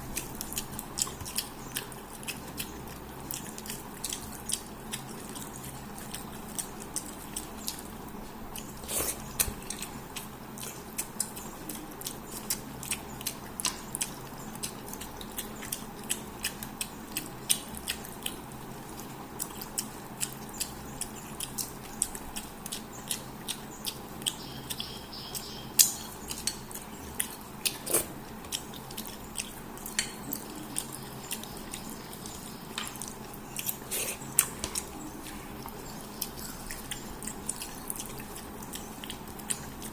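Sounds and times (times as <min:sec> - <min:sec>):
wet chewing and mouth smacking: 0:00.0 - 0:39.9.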